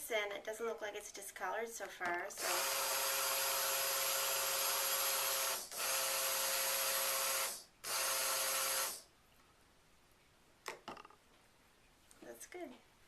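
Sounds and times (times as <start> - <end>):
stick blender motor whining: 2.4 - 9.0.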